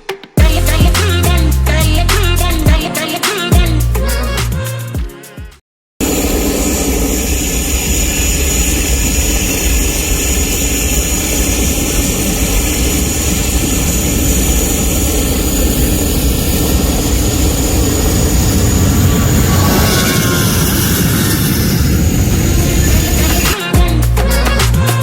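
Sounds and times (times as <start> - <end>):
jet engines at takeoff: 6.0 - 23.7
thin high whine: 6.0 - 25.0.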